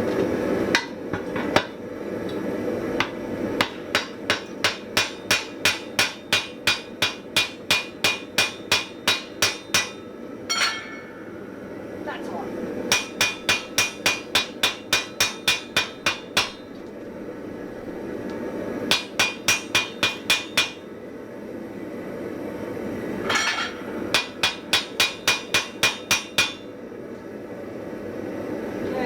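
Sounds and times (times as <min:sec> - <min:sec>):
hammer ringing on anvil: 0:04.0 - 0:11.3, 0:12.9 - 0:16.6, 0:18.9 - 0:20.8, 0:23.3 - 0:26.6.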